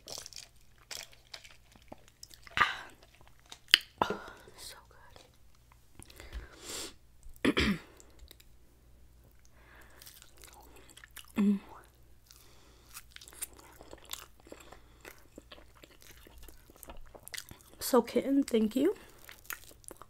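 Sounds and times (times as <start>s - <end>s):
wet chewing mouth clicks: 0.0s - 4.0s, 12.2s - 17.8s, 19.1s - 20.0s
person humming: 11.4s - 11.8s.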